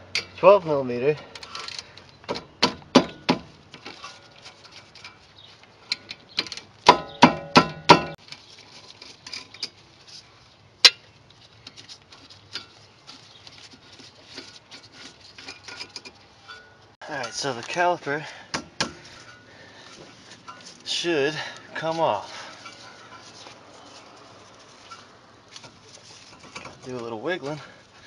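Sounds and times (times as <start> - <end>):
metal tools clinking: 1.0 - 2.0, 8.3 - 9.8, 11.6 - 18.4, 19.0 - 27.8
ringing metallic clanks: 15.6 - 17.6.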